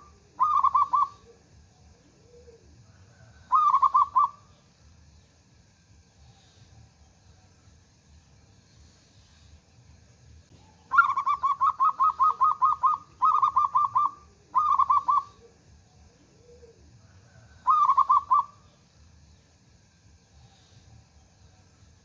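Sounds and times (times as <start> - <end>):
dove cooing: 0.0 - 4.5, 10.5 - 18.6.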